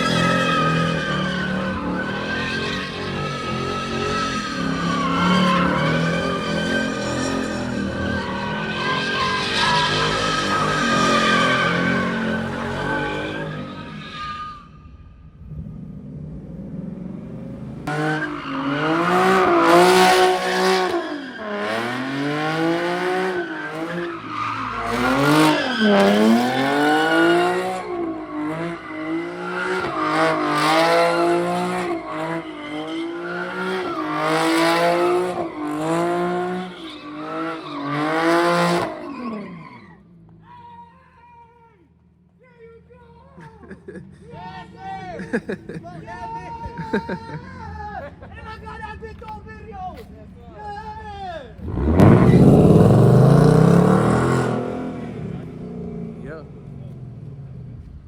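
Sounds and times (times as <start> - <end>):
tires squealing and skidding: 0.0 - 15.7, 17.8 - 41.6, 50.9 - 56.1
car engine revving hard: 51.6 - 56.3.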